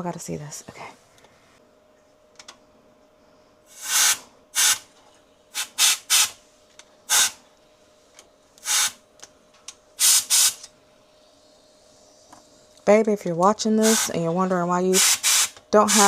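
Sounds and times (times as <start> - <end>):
compressed air hissing blasts: 3.7 - 4.9, 5.5 - 6.4, 7.1 - 7.4, 8.6 - 9.0, 10.0 - 10.6, 13.8 - 14.2, 14.9 - 16.0.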